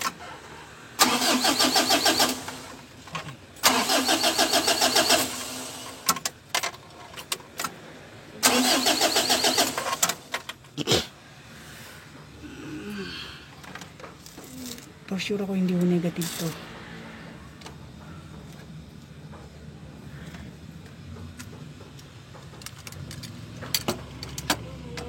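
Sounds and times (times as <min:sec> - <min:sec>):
diesel engine cranking: 0:00.0 - 0:10.8.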